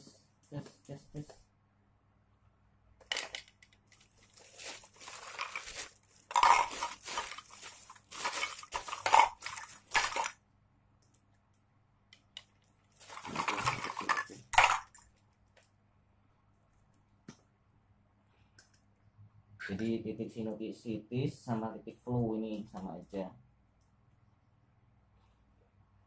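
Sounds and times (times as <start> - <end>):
plastic cups clattering: 3.0 - 10.4, 13.0 - 15.0.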